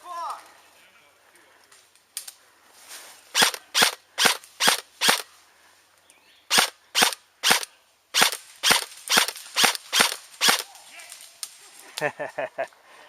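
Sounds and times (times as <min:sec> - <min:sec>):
airsoft gun shots: 0:03.4 - 0:05.2, 0:06.5 - 0:10.6.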